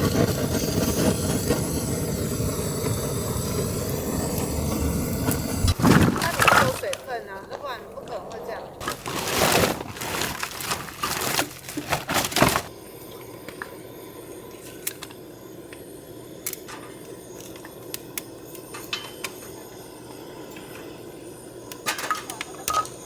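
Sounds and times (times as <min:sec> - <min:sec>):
loud crackling and popping: 0:03.8 - 0:12.7.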